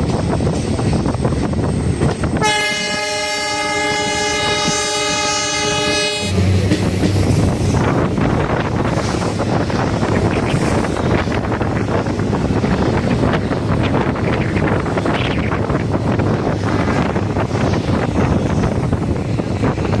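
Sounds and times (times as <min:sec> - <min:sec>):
train running on track: 0:00.0 - 0:20.0
train horn: 0:02.4 - 0:06.5.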